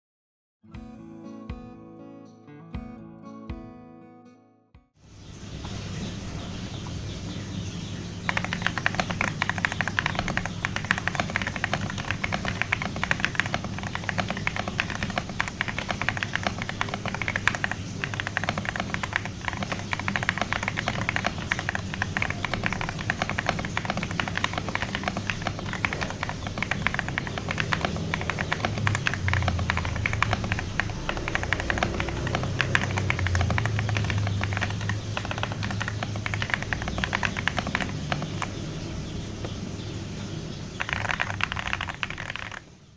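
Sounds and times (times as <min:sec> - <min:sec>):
fast typing on mechanical keyboard: 0:08.2 - 0:38.8, 0:40.8 - 0:42.7.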